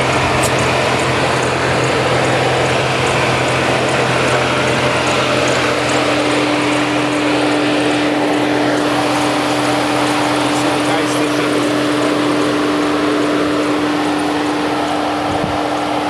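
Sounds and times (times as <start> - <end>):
car engine idling with misfire: 0.0 - 16.0
steady high tone: 0.0 - 16.0.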